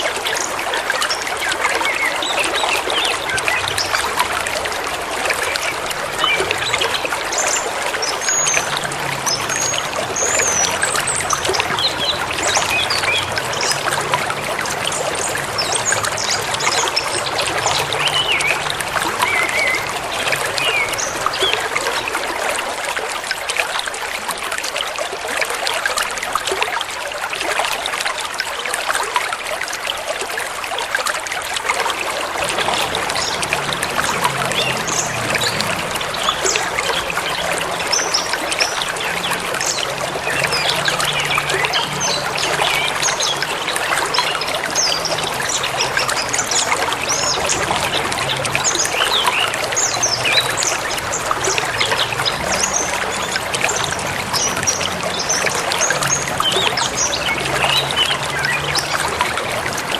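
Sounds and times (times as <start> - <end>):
river water rushing: 0.0 - 59.9.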